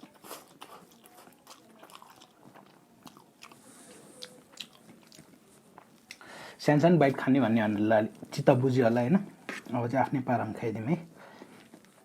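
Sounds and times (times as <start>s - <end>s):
person chewing: 0.0s - 6.2s.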